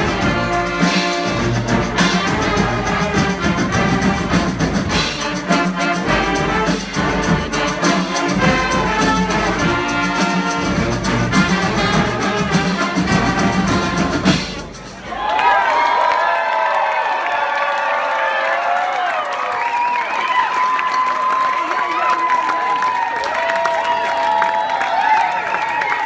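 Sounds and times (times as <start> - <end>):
drum beat: 0.0 - 15.0
brass band playing: 0.0 - 15.2
audience cheering and whooping: 15.0 - 26.0.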